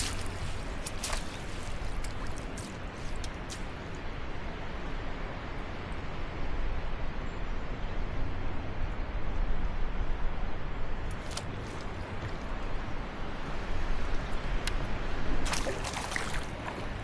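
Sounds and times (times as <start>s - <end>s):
water splashing and sloshing: 0.0s - 4.3s, 11.0s - 14.0s, 14.6s - 17.0s.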